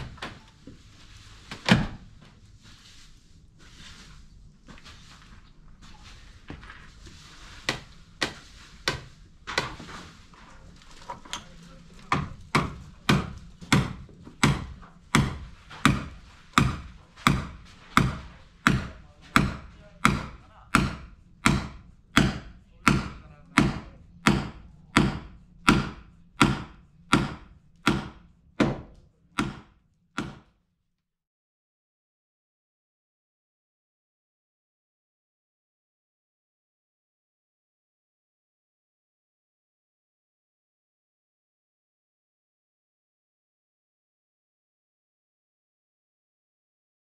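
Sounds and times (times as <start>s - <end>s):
hammer blows on wood: 12.1s - 30.5s.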